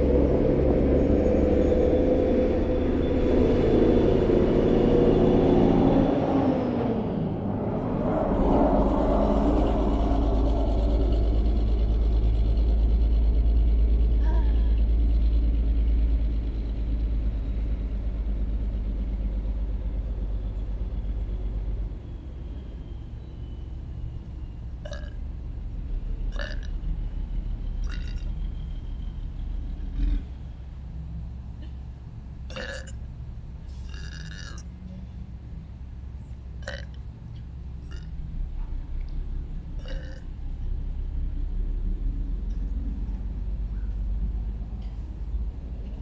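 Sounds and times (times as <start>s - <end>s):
low rumble: 0.0s - 46.0s
person burping: 24.8s - 25.2s, 26.3s - 26.7s, 27.8s - 28.2s, 32.5s - 33.0s, 33.9s - 34.7s, 36.6s - 37.0s, 39.8s - 40.3s.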